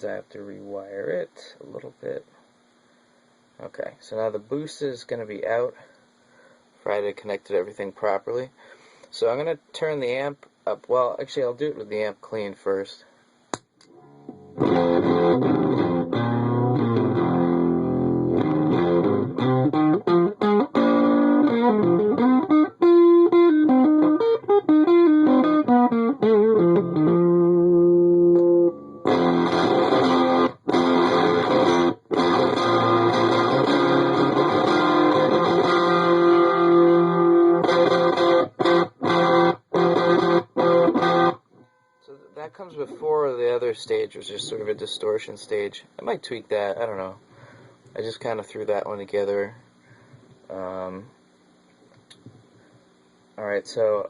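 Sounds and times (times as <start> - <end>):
fuzzy electric guitar chords: 13.9 - 41.4.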